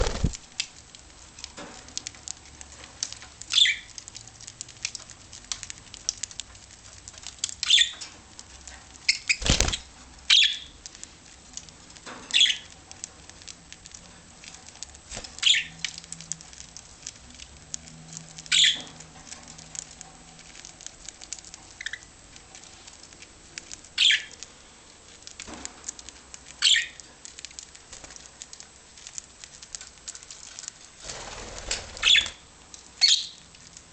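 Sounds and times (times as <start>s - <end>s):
small clicks and rustles: 0.0s - 33.9s
budgerigars chirping: 9.1s - 10.8s, 15.4s - 15.7s, 18.5s - 18.9s, 24.0s - 24.4s, 32.0s - 32.4s, 33.0s - 33.4s.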